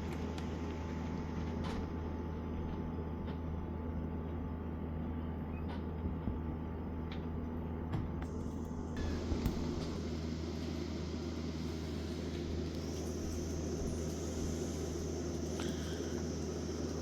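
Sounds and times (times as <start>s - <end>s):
steady rain: 10.5s - 17.0s.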